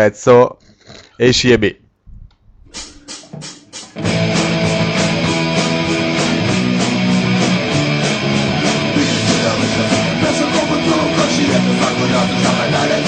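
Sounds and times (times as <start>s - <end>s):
distorted electric guitars: 2.7s - 13.0s
drums with quick beat: 2.7s - 13.0s
punk rock song: 2.7s - 13.0s.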